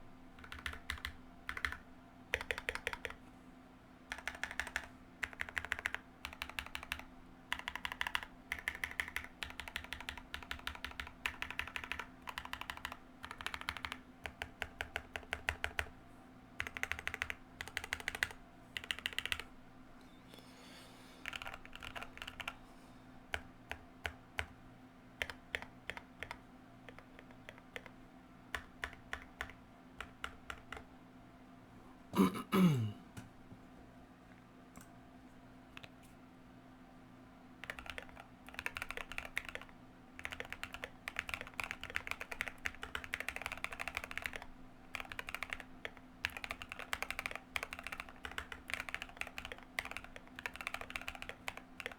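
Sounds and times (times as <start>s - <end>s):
mechanical keyboard typing: 0.4s - 3.2s, 4.1s - 15.9s, 16.6s - 19.5s, 21.2s - 22.6s, 23.3s - 24.6s, 25.2s - 27.9s, 28.5s - 30.9s, 37.6s - 51.9s.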